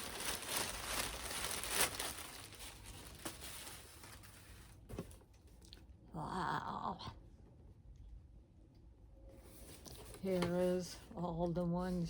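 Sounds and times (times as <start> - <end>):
packaging crinkling and rustling: 0.0 - 5.4.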